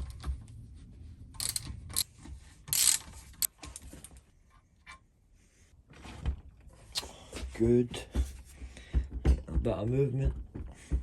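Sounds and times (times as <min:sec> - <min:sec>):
metal spanner clinking: 0:01.4 - 0:02.1, 0:02.7 - 0:03.0.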